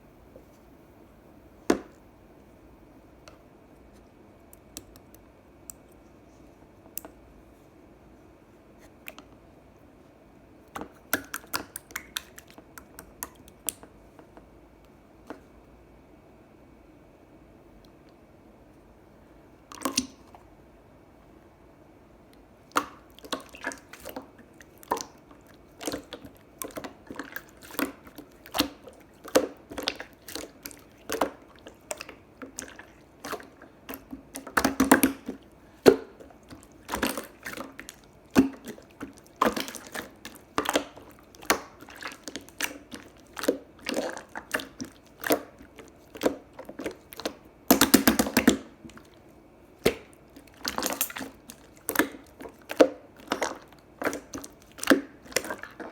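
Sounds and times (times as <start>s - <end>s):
slime squishing with wet pops: 4.4s - 6.0s, 10.6s - 15.5s, 19.6s - 20.5s, 22.3s - 55.9s.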